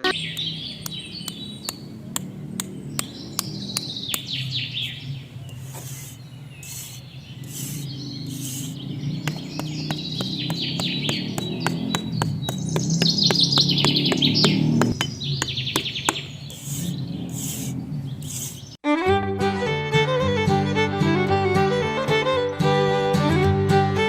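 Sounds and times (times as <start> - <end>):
sharp taps: 0.0 - 4.4, 5.5 - 17.7
birds chirping: 0.0 - 18.8.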